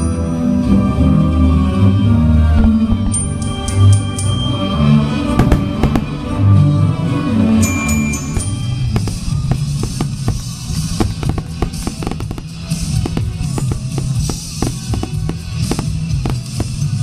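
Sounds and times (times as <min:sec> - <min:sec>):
fireworks cracking: 0:05.3 - 0:06.5, 0:08.2 - 0:17.0
music with drums and heavy bass: 0:05.4 - 0:06.6, 0:08.2 - 0:17.0.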